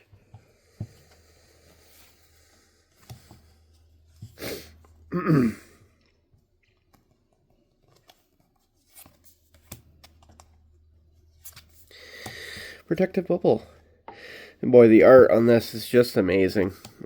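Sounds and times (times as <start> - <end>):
man's sharp breath: 11.9 - 12.8.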